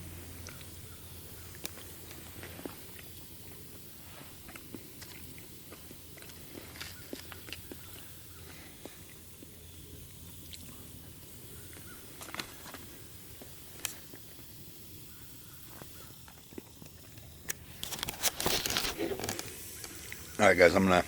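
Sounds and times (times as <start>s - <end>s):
small clicks and ticks: 0.4s - 0.8s, 11.7s - 14.6s, 15.6s - 20.3s
person chewing: 0.4s - 10.8s.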